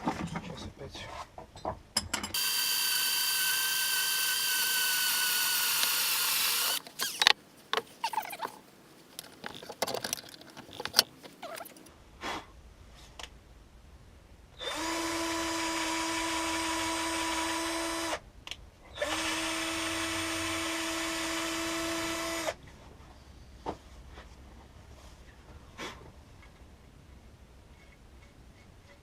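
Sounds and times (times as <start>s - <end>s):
electric drill running: 2.4s - 7.3s.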